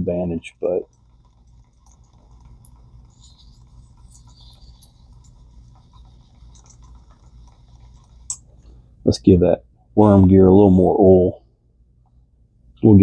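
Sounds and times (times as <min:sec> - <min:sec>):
steady low hum: 0:00.0 - 0:13.0
fishing reel clicks and scrapes: 0:00.5 - 0:08.6.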